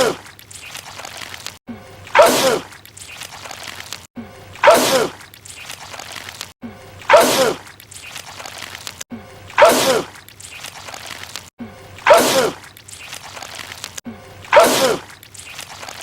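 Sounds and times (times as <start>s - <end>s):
man sneezing loudly: 9.6s - 10.1s, 14.5s - 15.0s.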